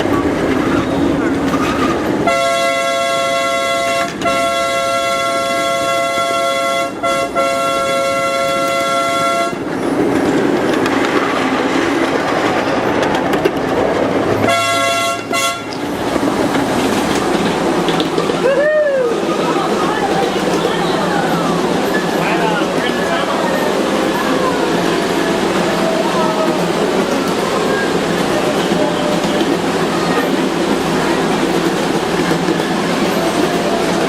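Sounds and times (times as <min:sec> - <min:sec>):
train running rumble: 0:00.0 - 0:34.0
locomotive chord horn: 0:02.2 - 0:09.7, 0:14.5 - 0:15.8.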